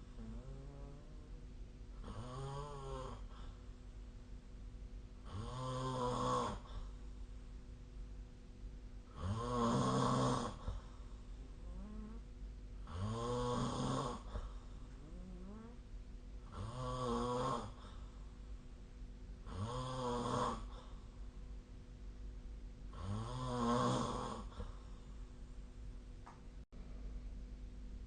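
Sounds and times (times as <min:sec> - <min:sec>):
person snoring: 0:00.1 - 0:01.4, 0:02.0 - 0:03.6, 0:05.2 - 0:06.9, 0:09.1 - 0:10.9, 0:11.5 - 0:12.2, 0:12.8 - 0:15.8, 0:16.4 - 0:18.0, 0:19.4 - 0:21.0, 0:22.9 - 0:24.9.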